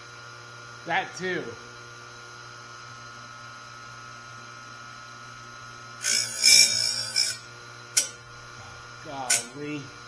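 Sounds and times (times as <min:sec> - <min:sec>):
harsh grinding on metal: 0:06.0 - 0:08.3, 0:09.2 - 0:09.6
grinder motor humming: 0:06.0 - 0:09.6.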